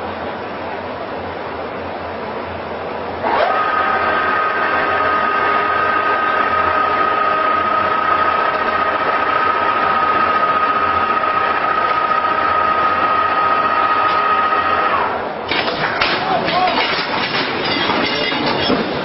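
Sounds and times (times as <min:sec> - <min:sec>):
small motor whining: 0:03.2 - 0:15.2
clattering: 0:15.5 - 0:19.0.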